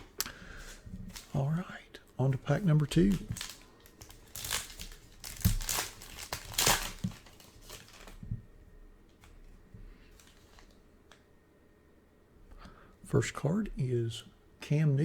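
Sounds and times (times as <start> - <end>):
foil wrapper tearing and crinkling: 2.6 - 8.2.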